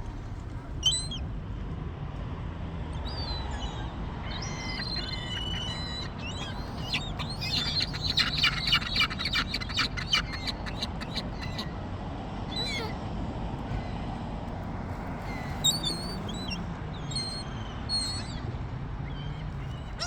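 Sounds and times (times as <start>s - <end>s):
gulls calling: 0.8s - 1.2s, 4.1s - 11.8s, 12.5s - 13.0s, 15.0s - 18.4s.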